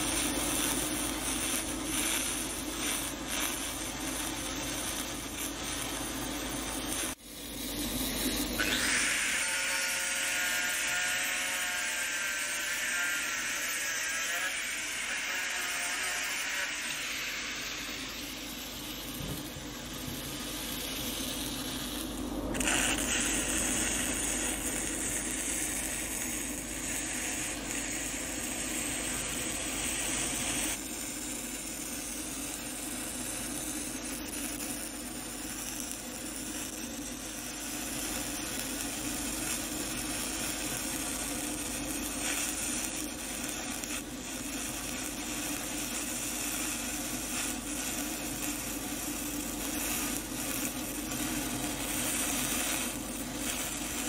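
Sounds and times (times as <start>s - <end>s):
stick welder arc burning: 0.0s - 54.0s.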